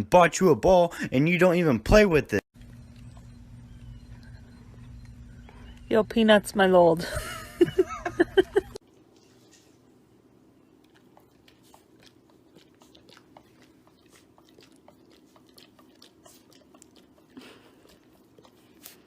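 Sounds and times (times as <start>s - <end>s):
low room hum: 0.0s - 19.0s
chewing and crunching: 2.6s - 5.9s, 10.5s - 19.0s.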